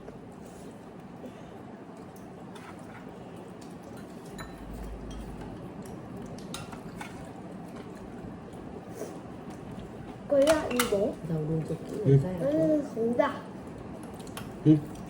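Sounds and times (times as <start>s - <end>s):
utensils clinking on dishes: 3.8s - 5.6s.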